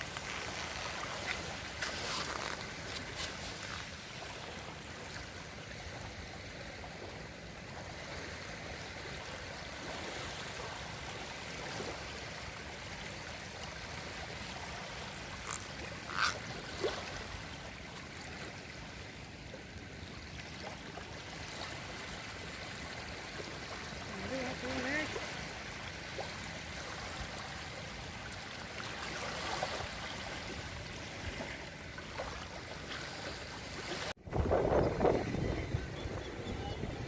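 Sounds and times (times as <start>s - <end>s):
sea water lapping on shore: 0.0s - 37.0s.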